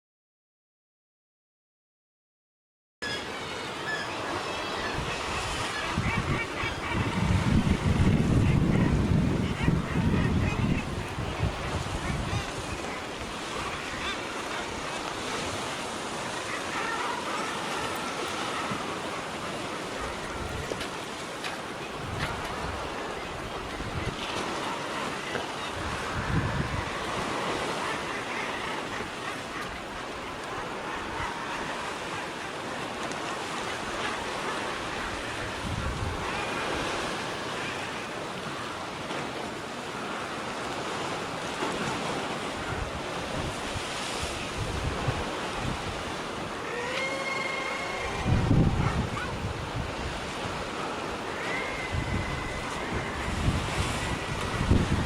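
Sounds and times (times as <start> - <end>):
sea surf washing: 3.0 - 55.0
wind buffeting microphone: 4.9 - 13.5, 25.7 - 27.8, 34.2 - 37.0, 42.6 - 46.5, 48.2 - 51.1, 51.8 - 55.0.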